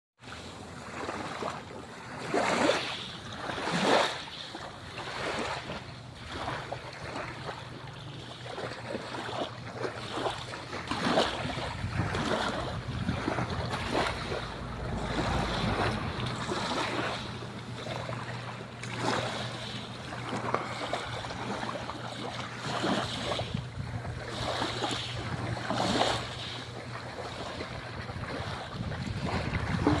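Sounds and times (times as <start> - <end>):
sea waves splashing: 0.2 - 30.0
steady low hum: 9.6 - 30.0.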